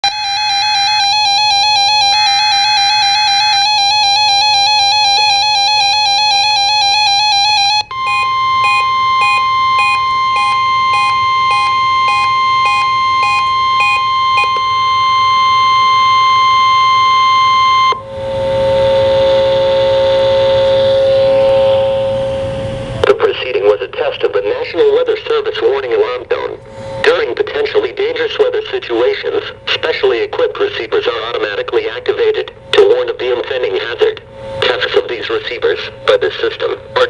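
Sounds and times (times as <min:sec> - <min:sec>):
pulsing beeps: 0:00.0 - 0:22.1
steady alarm tone: 0:00.0 - 0:23.0.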